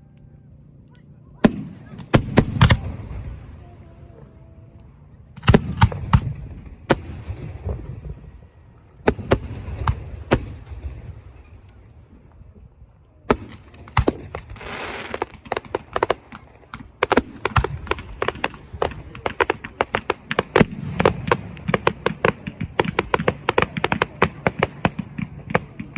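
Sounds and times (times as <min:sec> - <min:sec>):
fireworks cracking and banging: 0:01.4 - 0:04.2, 0:05.3 - 0:11.9, 0:13.3 - 0:25.9
fireworks hiss: 0:14.2 - 0:22.0.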